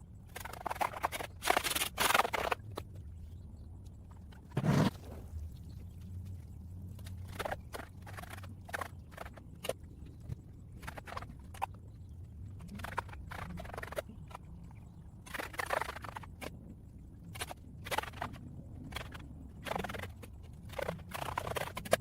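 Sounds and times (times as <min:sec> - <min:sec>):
shovel scraping wet mud: 0:04.6 - 0:05.3.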